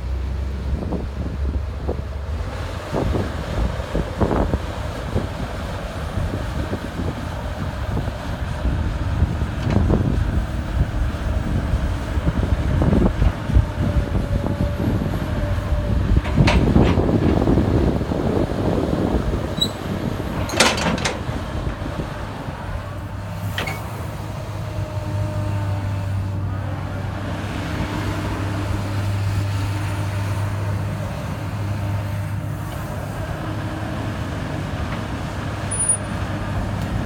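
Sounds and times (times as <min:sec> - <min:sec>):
excavator diesel engine humming: 0:00.0 - 0:37.0.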